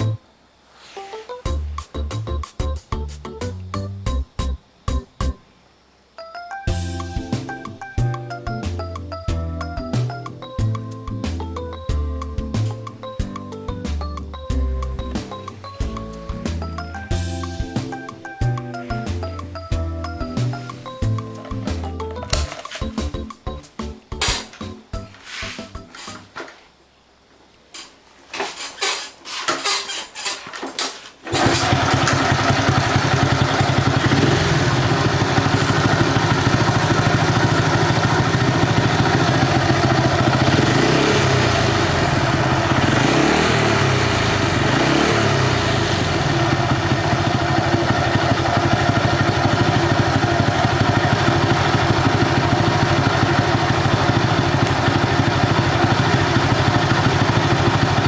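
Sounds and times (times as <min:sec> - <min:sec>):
small motorcycle engine running: 0:31.3 - 0:58.0.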